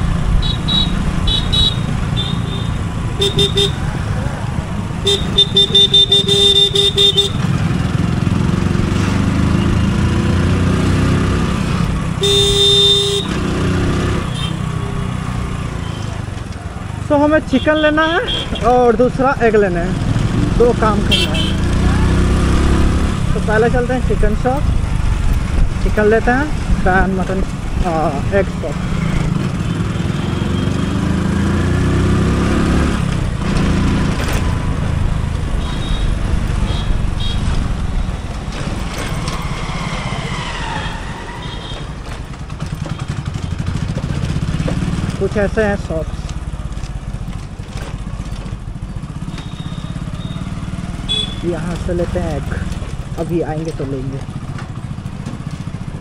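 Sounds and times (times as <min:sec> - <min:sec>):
motorcycle engine: 0:00.0 - 0:56.0
vehicle horn toots: 0:00.4 - 0:03.8, 0:05.0 - 0:07.5, 0:12.2 - 0:13.4, 0:14.3 - 0:14.6, 0:21.1 - 0:21.7, 0:35.6 - 0:37.5, 0:49.3 - 0:51.5.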